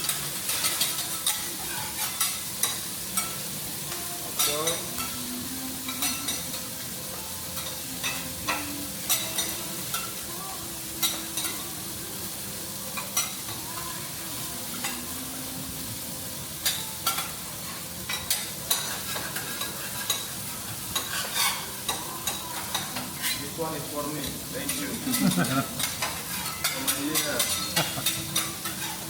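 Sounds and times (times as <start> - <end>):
food sizzling on a griddle: 0.0 - 29.0
metal spatulas scraping steel plate: 21.0 - 21.8.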